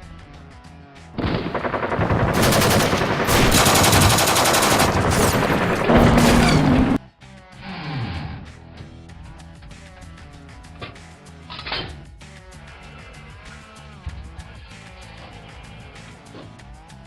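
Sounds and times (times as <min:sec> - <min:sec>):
machine-gun fire: 0:01.2 - 0:07.0.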